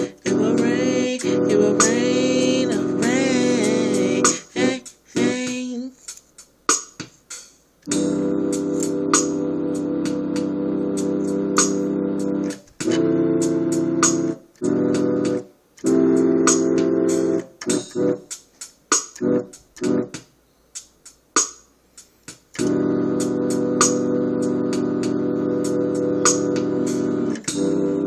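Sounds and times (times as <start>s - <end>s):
electronic keyboard piano chords: 0.0s - 5.8s, 7.9s - 21.6s, 22.3s - 28.0s.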